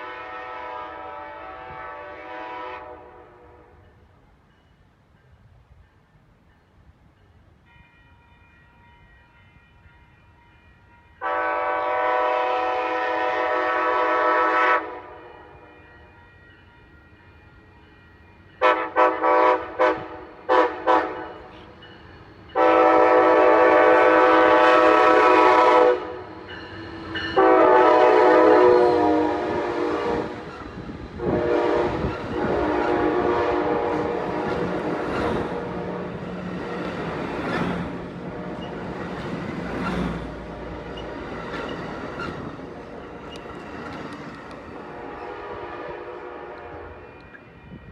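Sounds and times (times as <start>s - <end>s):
train chord horn blasts: 0.0s - 4.0s, 11.2s - 15.9s, 18.6s - 21.8s, 22.5s - 36.5s, 37.9s - 39.0s, 44.7s - 47.9s
train rolling past: 0.0s - 47.9s.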